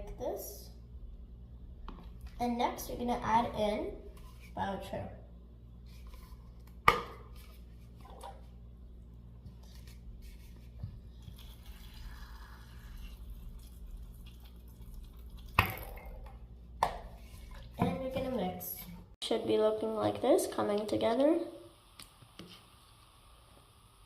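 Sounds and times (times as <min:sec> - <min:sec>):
liquid dripping: 0:11.2 - 0:16.1.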